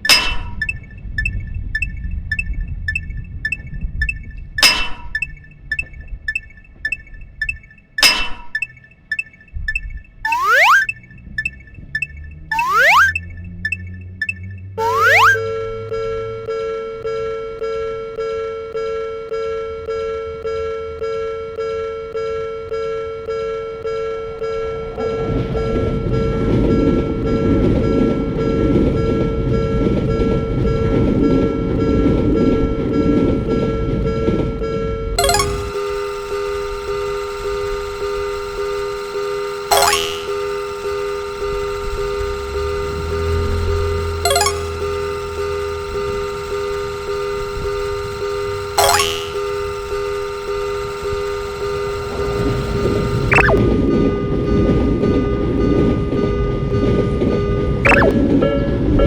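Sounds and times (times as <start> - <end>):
rising electronic whistle: 0.0 - 15.6, 35.2 - 53.6, 57.9 - 58.2
railroad crossing bell dinging: 0.0 - 16.4, 39.7 - 50.7
train rumble and wheel clatter: 24.9 - 34.7, 53.7 - 59.0
railroad crossing bell ringing: 43.5 - 50.5.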